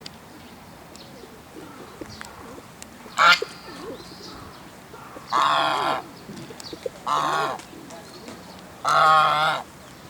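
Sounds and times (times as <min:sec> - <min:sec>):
goose honking: 0:05.3 - 0:06.0, 0:07.1 - 0:07.6, 0:08.8 - 0:09.6.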